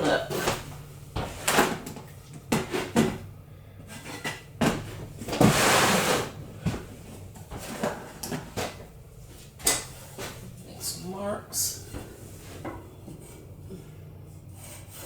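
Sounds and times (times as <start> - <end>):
wooden board and tools clattering: 0.0 - 10.4
scraping rasp: 3.8 - 6.8, 11.7 - 15.0.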